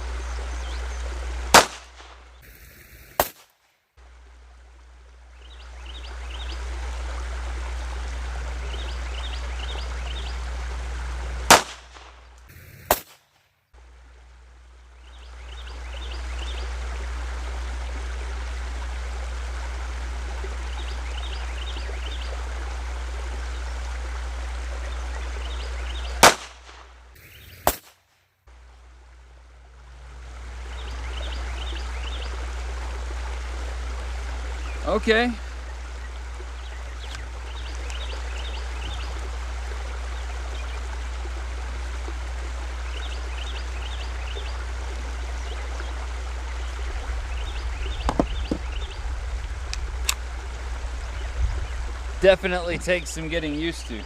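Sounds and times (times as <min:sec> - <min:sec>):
birds chirping: 0:00.0 - 0:03.3, 0:05.3 - 0:13.1, 0:14.9 - 0:18.6, 0:20.1 - 0:27.8, 0:30.2 - 0:54.0
background hiss: 0:00.0 - 0:03.8, 0:08.6 - 0:13.5, 0:25.4 - 0:28.8
gunshots: 0:01.5 - 0:02.2, 0:02.9 - 0:03.5, 0:11.5 - 0:13.2, 0:26.2 - 0:26.9, 0:27.6 - 0:28.0
quieter sharp crack: 0:01.5 - 0:03.8, 0:11.5 - 0:13.5, 0:26.2 - 0:27.0, 0:27.6 - 0:28.2.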